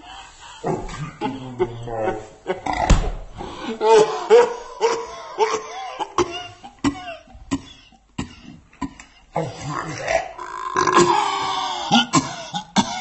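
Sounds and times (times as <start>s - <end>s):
person coughing: 3.8s - 9.8s, 11.9s - 13.0s.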